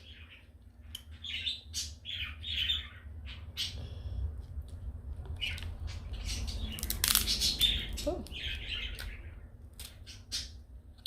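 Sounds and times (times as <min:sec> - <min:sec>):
bird squawking and chirping: 0:01.1 - 0:03.8, 0:05.4 - 0:10.6.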